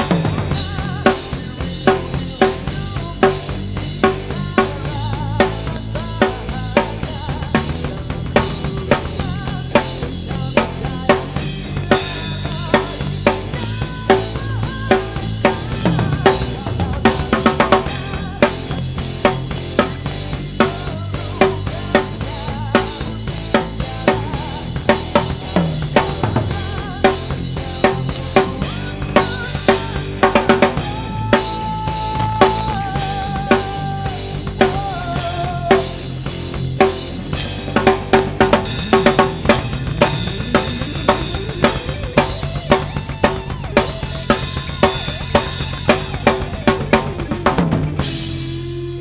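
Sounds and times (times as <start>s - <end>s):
person singing: 0.0s - 48.3s
drum kit playing groove: 0.0s - 49.0s
song melody: 10.5s - 49.0s.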